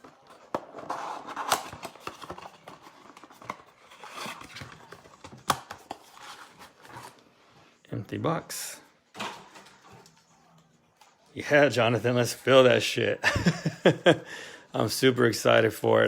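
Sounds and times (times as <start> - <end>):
card wrappers crinkling and tearing: 0.0 - 7.2.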